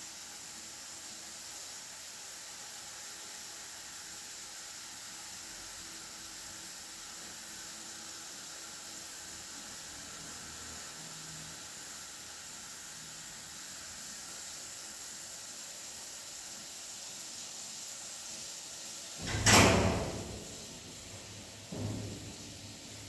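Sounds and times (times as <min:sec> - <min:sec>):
rain hissing: 0:17.5 - 0:23.0.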